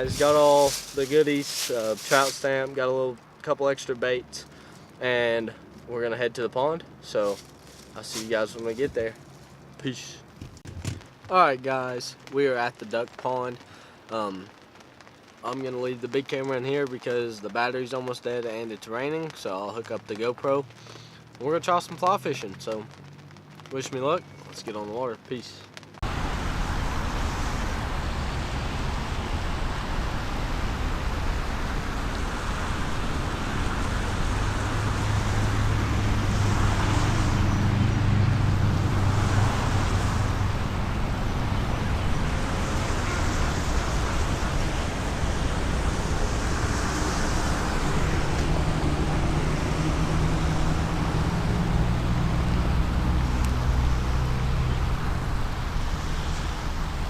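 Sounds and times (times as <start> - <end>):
low rumbling noise with hiss: 0.0 - 57.0.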